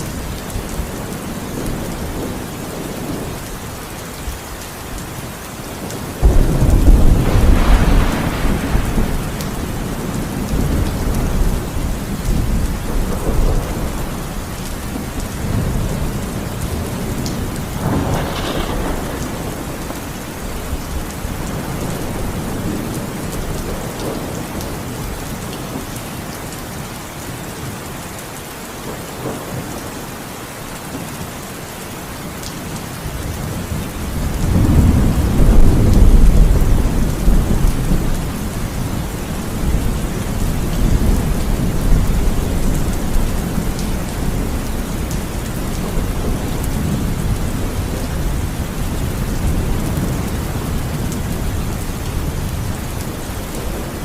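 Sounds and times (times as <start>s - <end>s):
heavy rain falling: 0.0s - 54.0s
thunder rumbling: 5.8s - 25.8s, 33.2s - 54.0s.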